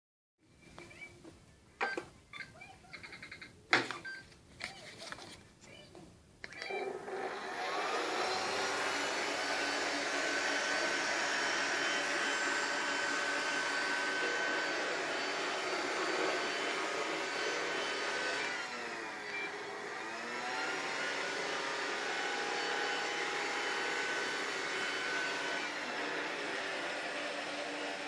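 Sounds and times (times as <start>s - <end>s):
robot vacuum cleaner whirring: 6.6s - 28.0s.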